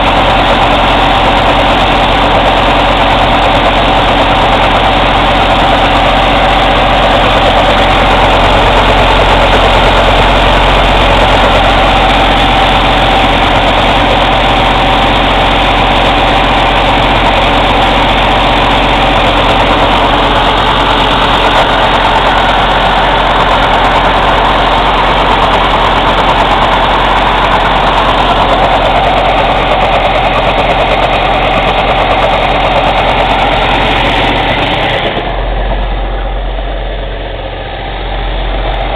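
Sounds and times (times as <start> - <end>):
diesel engine running: 0.0 - 38.9
thin steady whine: 0.0 - 38.9.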